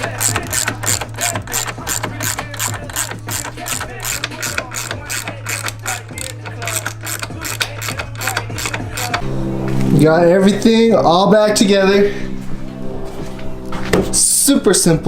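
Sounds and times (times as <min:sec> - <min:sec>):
hi-hat ticks: 0:00.0 - 0:09.2
deep bass line: 0:00.0 - 0:15.0.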